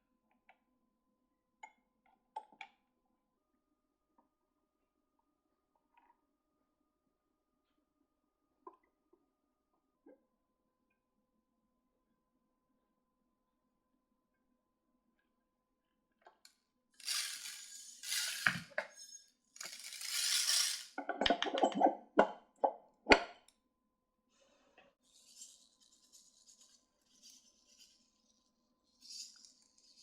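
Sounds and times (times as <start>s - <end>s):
faint scratchy hissing: 17.0s - 21.0s
small hard objects clinking: 17.0s - 21.0s.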